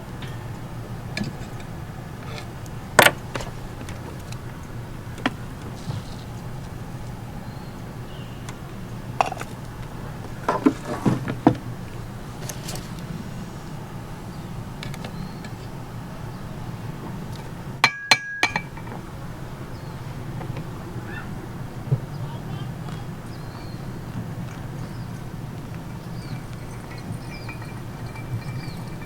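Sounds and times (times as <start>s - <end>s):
steady low hum: 2.7s - 14.8s
sharp clicks and knocks: 3.0s - 7.2s.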